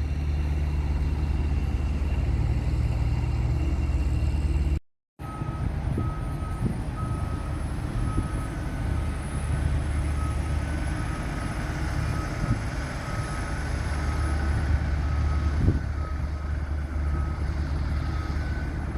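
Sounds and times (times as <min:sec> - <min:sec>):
machinery engine rumble: 0:00.0 - 0:18.9
reversing alarm beeping: 0:05.2 - 0:18.9.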